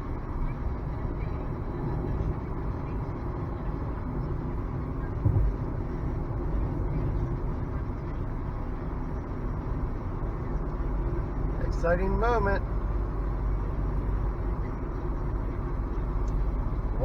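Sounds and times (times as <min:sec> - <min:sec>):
road and tyre noise in car: 0:00.0 - 0:17.0
car thump: 0:05.2 - 0:05.6.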